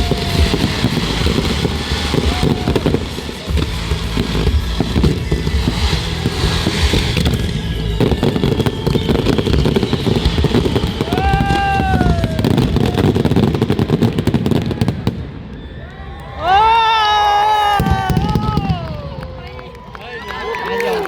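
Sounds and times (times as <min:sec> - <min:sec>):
music playing: 0:00.0 - 0:12.7
fireworks booming and crackling: 0:00.0 - 0:15.8, 0:17.6 - 0:19.8
falling firework whistle: 0:00.0 - 0:19.5.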